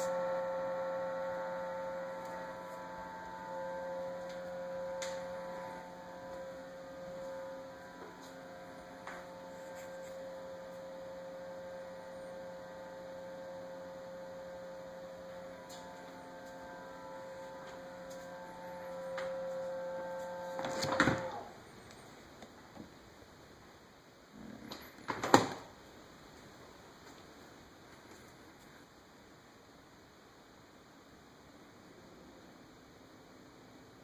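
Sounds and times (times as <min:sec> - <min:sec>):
refrigerator humming: 0:00.0 - 0:23.6.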